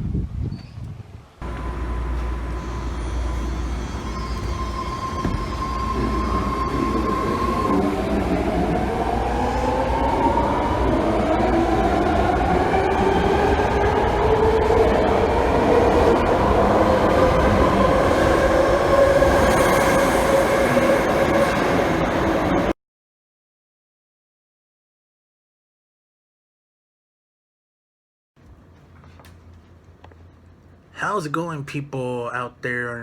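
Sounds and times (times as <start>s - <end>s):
electric train motors whining: 1.4s - 22.7s
train running noise: 1.4s - 22.7s.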